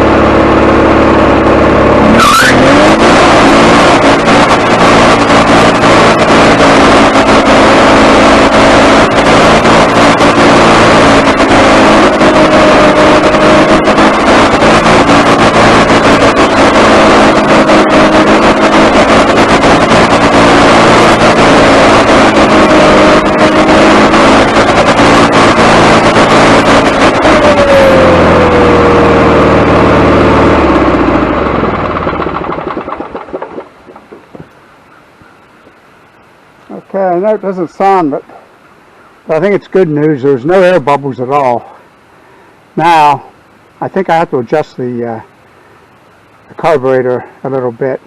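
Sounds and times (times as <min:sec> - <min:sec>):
sawmill engine running: 0:00.0 - 0:35.8.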